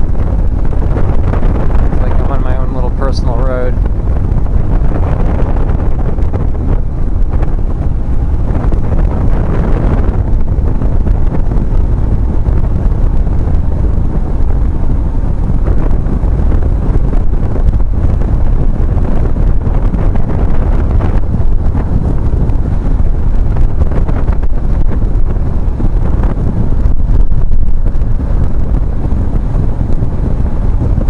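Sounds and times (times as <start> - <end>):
motorcycle running noise: 0.0 - 31.0
wind buffeting microphone: 0.0 - 31.0.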